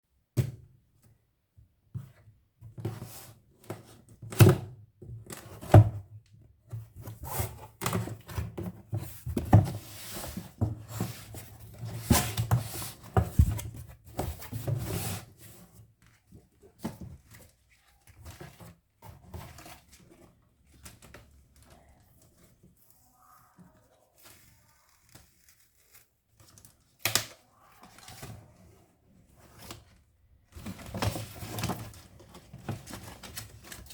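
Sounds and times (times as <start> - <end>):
cardboard packaging rustling: 7.0 - 21.8, 29.2 - 33.9
knocks and thunks on box: 12.0 - 14.8.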